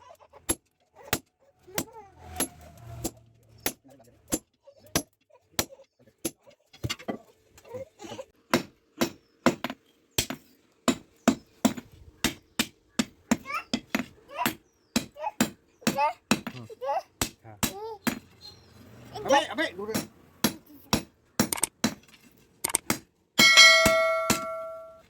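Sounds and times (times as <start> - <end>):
hammer striking steel on anvil: 23.4 - 25.0.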